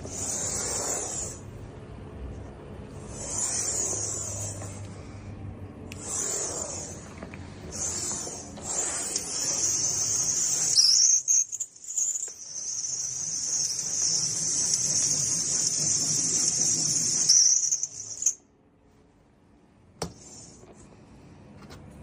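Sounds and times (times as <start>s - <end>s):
high-pitched screeching whine: 0.0s - 1.5s, 2.9s - 4.8s, 5.9s - 18.4s.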